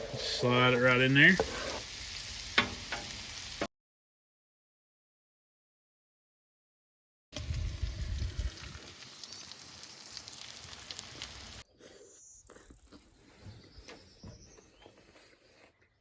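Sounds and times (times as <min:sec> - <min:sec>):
food sizzling on a griddle: 0:00.0 - 0:03.7, 0:07.4 - 0:11.6.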